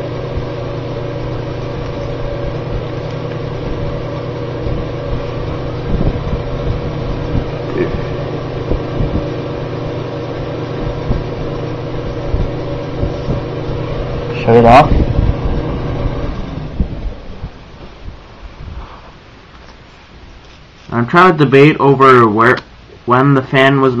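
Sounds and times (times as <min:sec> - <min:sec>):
electric fan humming: 0:00.0 - 0:24.0.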